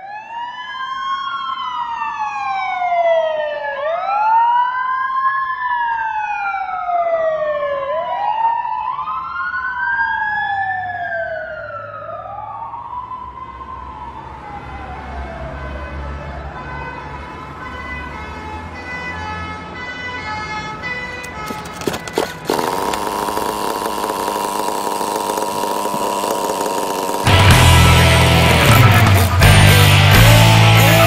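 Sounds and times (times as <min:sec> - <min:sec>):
wailing siren: 0:00.0 - 0:21.6.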